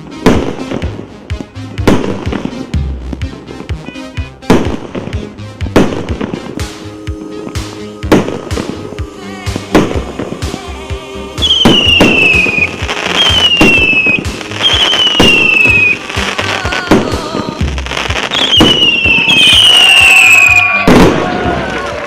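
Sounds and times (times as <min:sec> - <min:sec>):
falling whistles: 0:11.4 - 0:16.0, 0:18.3 - 0:21.0
firework cake bangs: 0:16.9 - 0:21.6.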